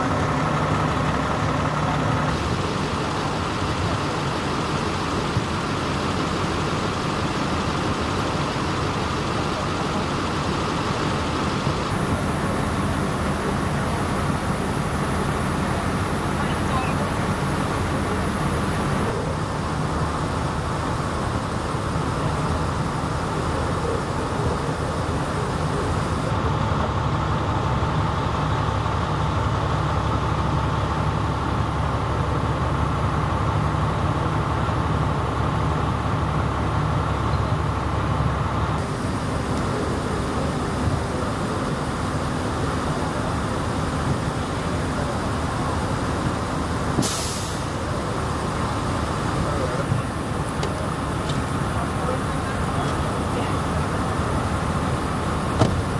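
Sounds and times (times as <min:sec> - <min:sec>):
heavy vehicle engine idling: 0:00.0 - 0:55.9
short hiss: 0:47.0 - 0:47.8.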